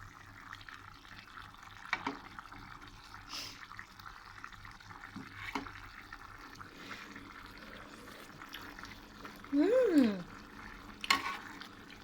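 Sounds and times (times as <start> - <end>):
faint kitchen background noise: 0.0 - 12.0
person humming: 9.5 - 10.3.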